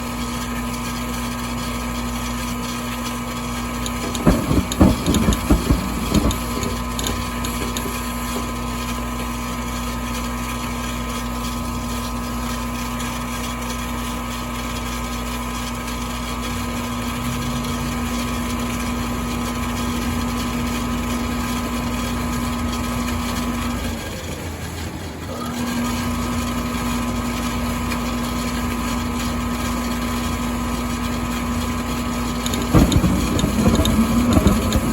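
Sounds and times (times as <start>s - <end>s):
furnace hum: 0.0s - 34.9s
loud rapid clicks: 3.8s - 8.6s.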